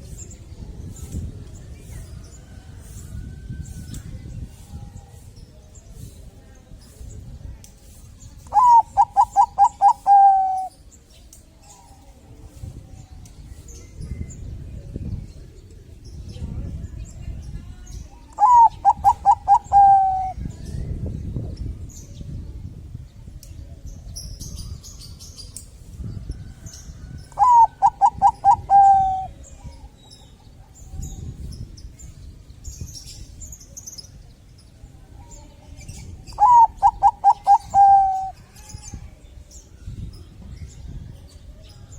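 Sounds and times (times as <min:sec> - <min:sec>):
dove cooing: 0:08.5 - 0:10.7, 0:18.4 - 0:20.4, 0:27.4 - 0:29.4, 0:36.4 - 0:38.4.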